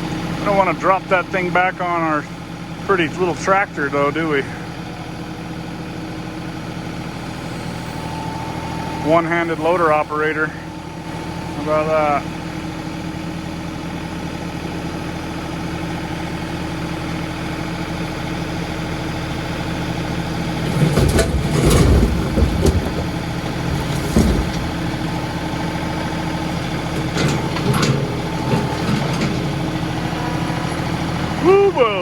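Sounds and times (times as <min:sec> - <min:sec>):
tractor diesel engine running: 0:00.0 - 0:32.0
heavy clunks and clatter: 0:20.4 - 0:30.0.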